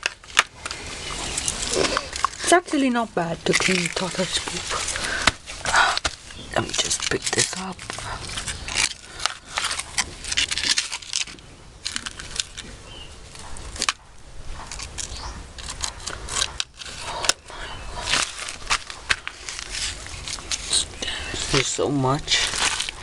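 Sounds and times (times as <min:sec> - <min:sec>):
plastic scoop scraping ground: 0:14.7 - 0:23.0.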